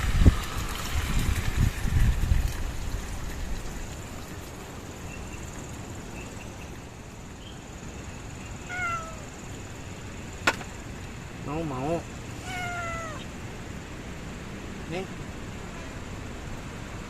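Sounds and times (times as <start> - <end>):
steady background noise: 3.3 - 17.0
cat meowing: 8.7 - 9.3, 12.4 - 13.3.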